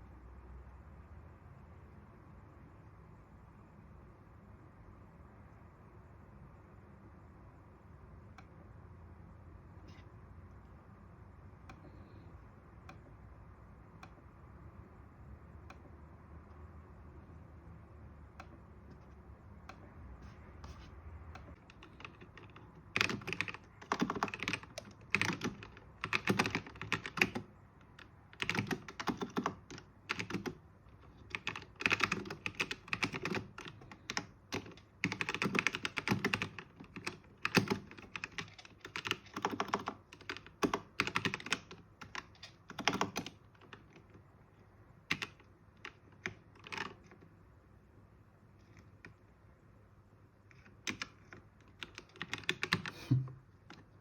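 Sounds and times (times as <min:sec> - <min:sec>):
mechanical keyboard typing: 0:21.4 - 0:44.3, 0:45.0 - 0:47.2, 0:50.5 - 0:53.9.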